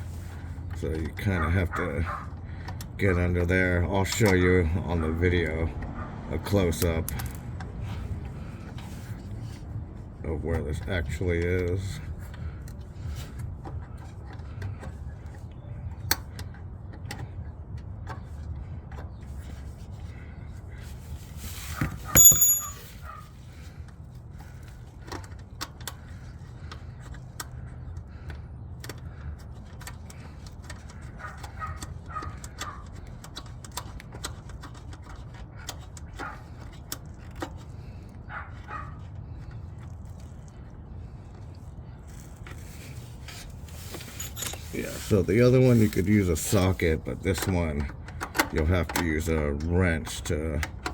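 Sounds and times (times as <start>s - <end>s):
metal tools clicking and scraping: 22.1s - 23.0s, 43.3s - 47.6s
loud ringing metal clank: 22.2s - 22.9s.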